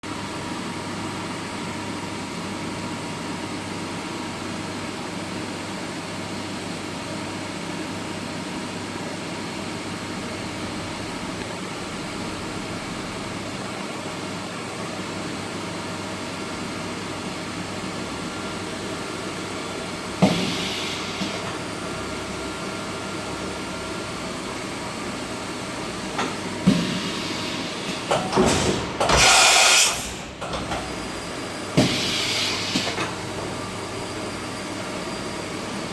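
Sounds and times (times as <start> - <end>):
bursts of hiss: 29.1 - 30.1.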